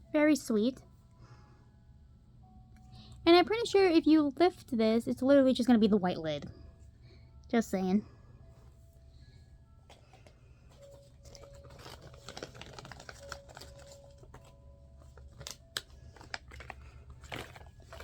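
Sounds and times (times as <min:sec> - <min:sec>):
packaging crinkling: 0:09.9 - 0:18.0.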